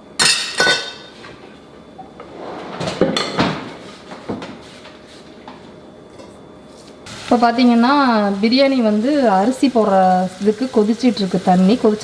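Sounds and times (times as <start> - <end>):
dishes and utensils clinking: 0.2 - 1.4, 2.8 - 3.7.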